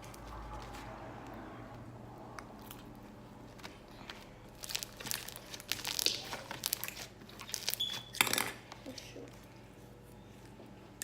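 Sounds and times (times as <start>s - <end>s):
slime crackling and popping: 4.5s - 8.2s.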